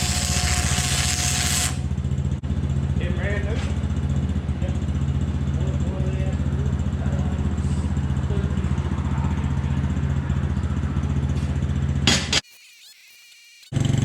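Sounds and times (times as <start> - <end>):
small gasoline engine idling: 0.0 - 12.0.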